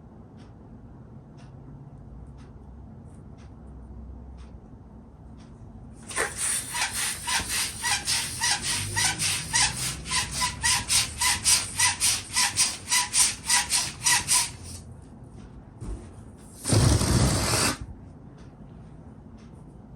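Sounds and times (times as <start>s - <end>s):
hand pump inflating balloon: 6.0s - 14.8s, 16.5s - 17.9s
rubbery squeak: 6.1s - 14.8s, 16.6s - 17.8s.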